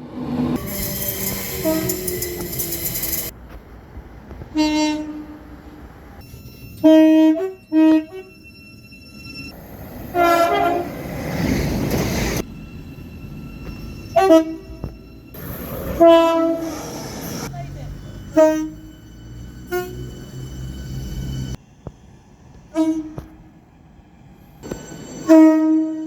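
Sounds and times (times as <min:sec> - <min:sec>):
passing train rushing: 0:00.0 - 0:26.0
train horn blasts: 0:00.6 - 0:03.3, 0:04.5 - 0:05.6, 0:06.8 - 0:08.4, 0:10.1 - 0:11.0, 0:13.7 - 0:15.0, 0:15.8 - 0:21.2, 0:22.7 - 0:23.4, 0:25.2 - 0:26.0.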